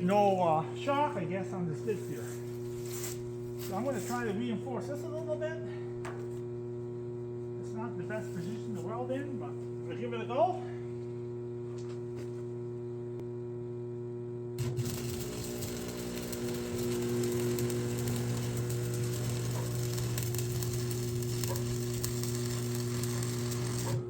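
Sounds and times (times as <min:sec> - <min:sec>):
steady hum: 0:00.0 - 0:24.0
arc welder crackling: 0:01.9 - 0:04.4, 0:14.6 - 0:24.0.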